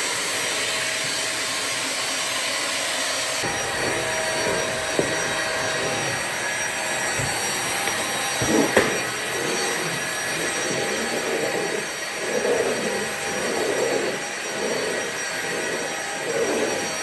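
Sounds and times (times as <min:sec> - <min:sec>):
vacuum cleaner running: 0:00.0 - 0:17.0
bumps: 0:03.4 - 0:10.6.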